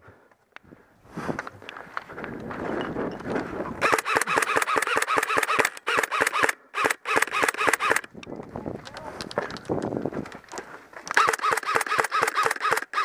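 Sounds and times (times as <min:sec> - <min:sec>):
airsoft gun firing bursts: 0:03.8 - 0:08.1, 0:11.2 - 0:13.0.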